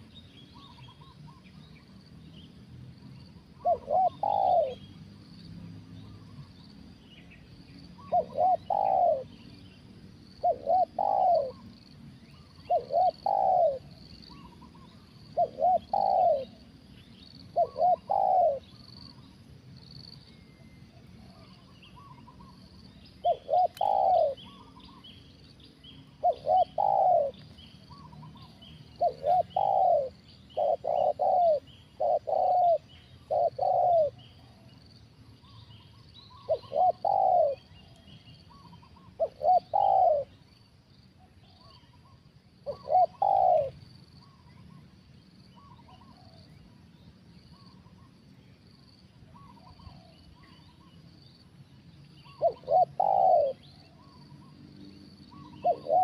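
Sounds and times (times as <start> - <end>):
dove cooing: 3.6 - 4.9, 8.0 - 9.4, 10.4 - 11.7, 12.5 - 16.6, 17.5 - 19.2, 23.2 - 25.0, 26.1 - 34.6, 36.3 - 37.9, 38.5 - 40.4, 41.6 - 44.6, 52.2 - 54.2, 55.3 - 56.0.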